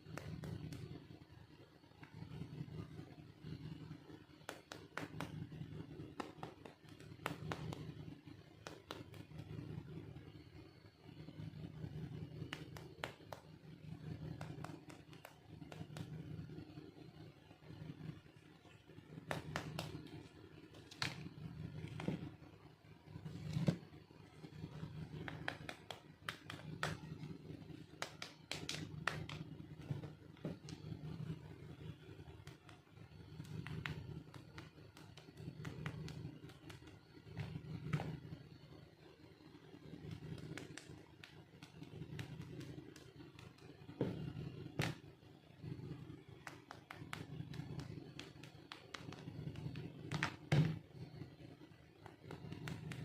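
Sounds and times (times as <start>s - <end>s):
low steady hum: 0.0s - 53.0s.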